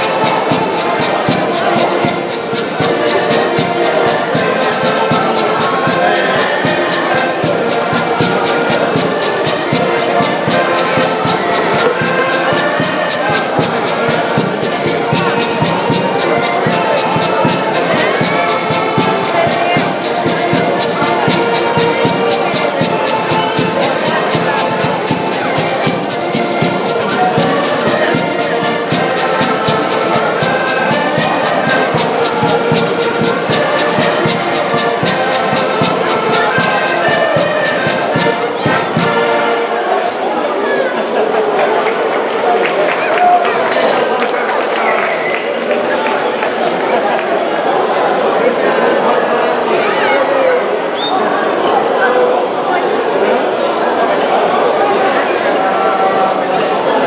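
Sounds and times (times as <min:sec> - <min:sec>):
quick drum beat: 0:00.0 - 0:39.4
live band playing: 0:00.0 - 0:39.7.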